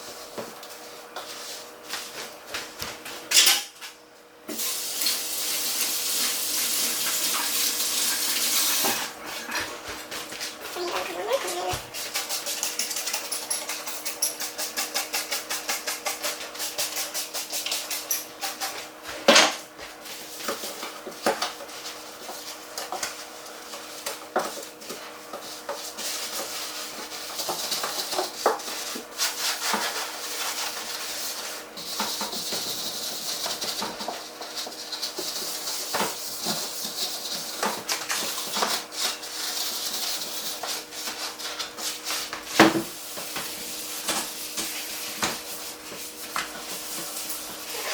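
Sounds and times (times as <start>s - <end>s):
scrubbing inside a fridge: 5.8s - 12.7s, 19.9s - 47.9s.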